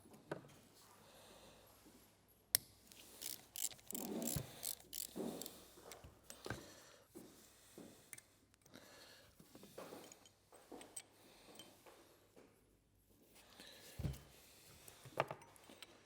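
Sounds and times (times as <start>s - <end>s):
metal tools clicking and rattling: 2.9s - 6.5s.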